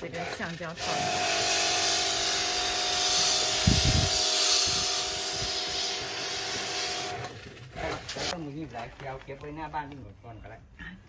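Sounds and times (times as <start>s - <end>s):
high-pressure water spray hissing: 0.8s - 7.3s.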